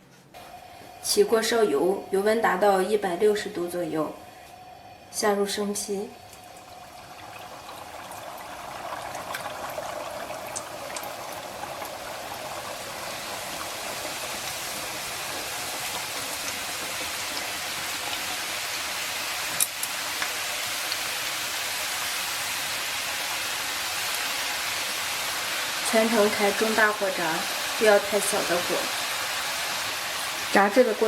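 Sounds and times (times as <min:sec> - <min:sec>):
dough sizzling in frying oil: 0:06.2 - 0:31.0
oil crackles and pops: 0:06.3 - 0:22.1.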